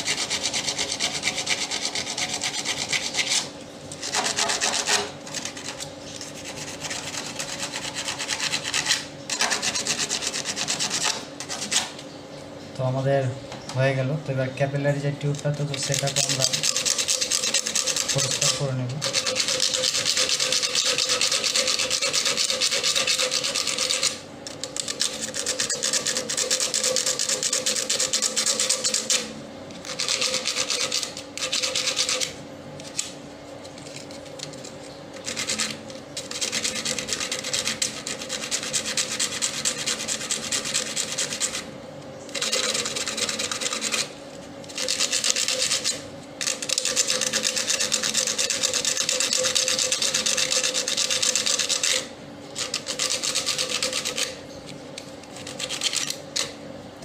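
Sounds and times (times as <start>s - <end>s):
sandpaper rubbing on metal tube: 0.0s - 12.0s, 15.9s - 24.2s, 24.8s - 32.3s, 35.2s - 41.7s.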